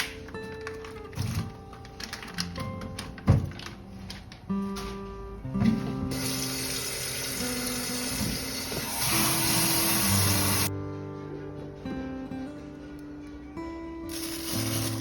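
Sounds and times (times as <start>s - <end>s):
background music: 0.0s - 15.0s
water running from a tap: 6.1s - 10.7s, 14.1s - 15.0s.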